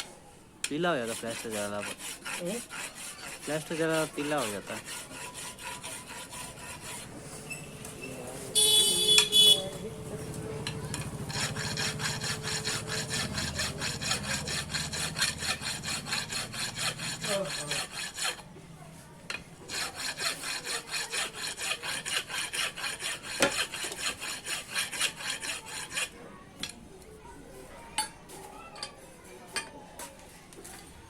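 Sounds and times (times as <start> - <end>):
hand tool rasping on metal: 0.6 - 8.4, 10.1 - 18.5, 19.3 - 26.2.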